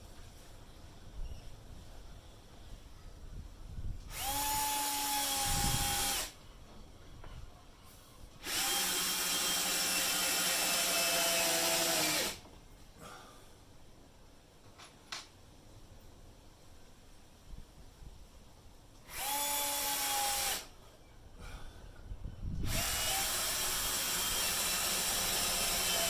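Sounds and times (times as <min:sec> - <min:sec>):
electric drill running: 0:04.1 - 0:06.4, 0:08.4 - 0:12.4, 0:19.1 - 0:20.7, 0:22.6 - 0:26.0.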